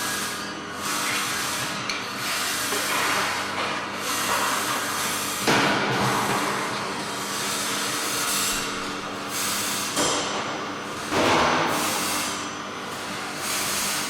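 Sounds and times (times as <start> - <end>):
air hissing bursts: 11.7 - 12.4.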